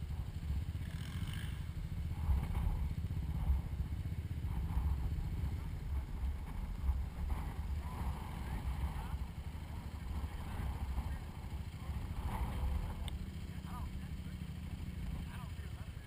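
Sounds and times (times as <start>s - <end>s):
quad bike engines rumbling: 0.0s - 16.0s.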